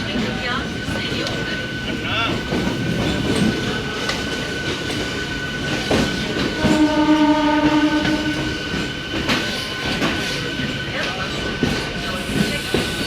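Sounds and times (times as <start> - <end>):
train running on tracks: 0.0 - 13.0
train horn: 6.4 - 8.6.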